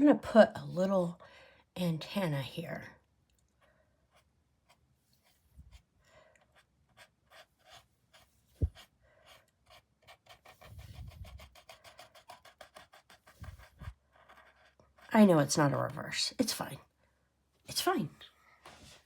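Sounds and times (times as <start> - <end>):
paintbrush scratching on canvas: 4.1 - 15.7.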